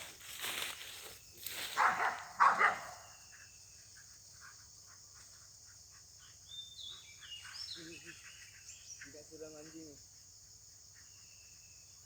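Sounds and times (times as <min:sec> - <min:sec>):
dogs barking: 0:01.7 - 0:03.1.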